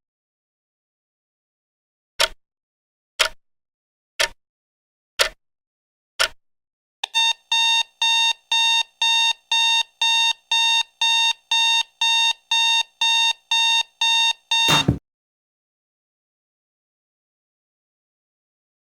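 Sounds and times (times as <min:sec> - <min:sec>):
alarm clock beeping: 0:07.2 - 0:15.0
loud thump: 0:14.7 - 0:15.0
sharp click: 0:14.7 - 0:15.0.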